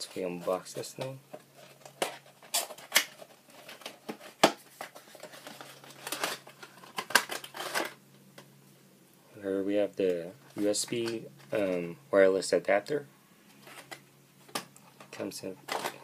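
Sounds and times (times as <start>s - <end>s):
packaging rustling and scraping: 0.0s - 8.0s, 13.5s - 14.0s.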